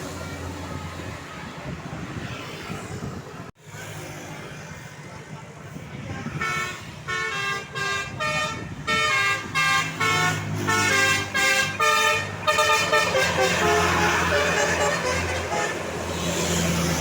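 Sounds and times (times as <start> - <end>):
multi-tone air horn melody: 6.4 - 16.0
bus engine running: 7.4 - 17.0.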